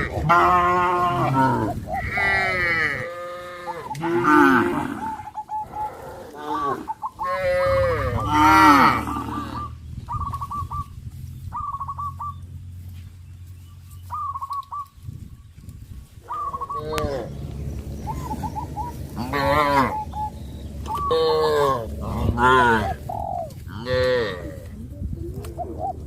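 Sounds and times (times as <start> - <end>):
cattle mooing: 0.0 - 9.8, 16.4 - 24.8
steady low hum: 7.7 - 25.2
short bird calls: 9.0 - 12.5, 13.4 - 15.0, 16.2 - 23.9.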